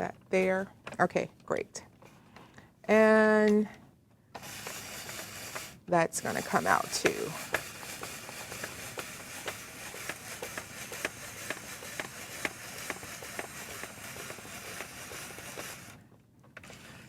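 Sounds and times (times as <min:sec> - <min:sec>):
spiralizer blade crunching vegetable: 0:04.4 - 0:16.0.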